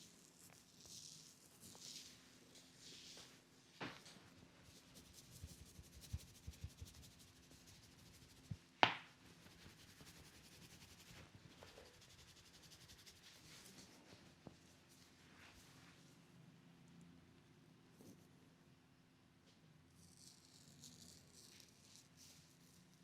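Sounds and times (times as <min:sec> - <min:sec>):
hands rubbing scalp: 0:04.7 - 0:08.6, 0:09.3 - 0:13.9.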